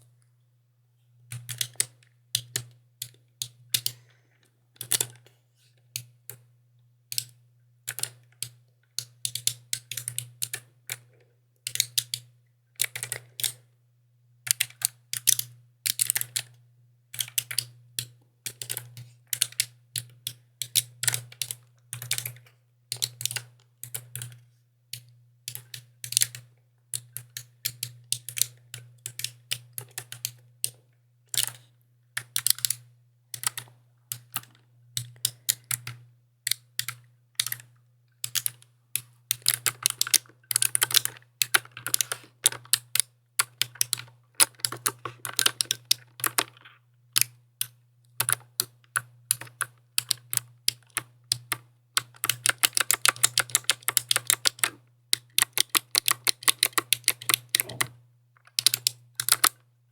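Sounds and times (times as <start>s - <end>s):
mechanical keyboard typing: 7.9s - 11.0s, 17.2s - 24.4s, 25.5s - 30.4s, 32.2s - 59.6s.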